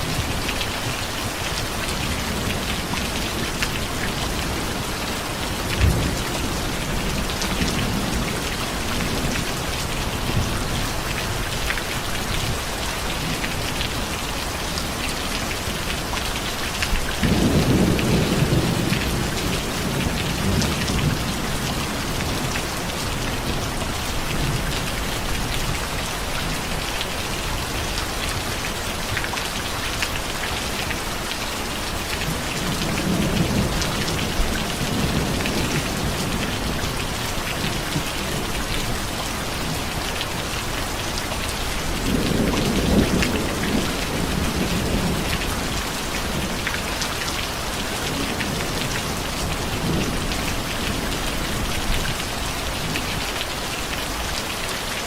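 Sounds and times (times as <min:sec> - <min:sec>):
steady rain with dripping drops: 0:00.0 - 0:55.0
low rolls of thunder: 0:17.2 - 0:21.7.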